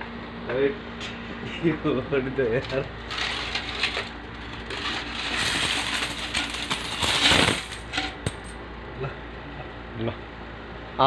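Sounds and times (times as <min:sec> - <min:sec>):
coins clattering: 0:03.1 - 0:08.6.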